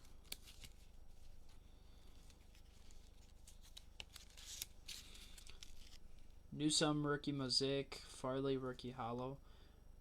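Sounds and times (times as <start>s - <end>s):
cards rustling: 0.0s - 6.4s.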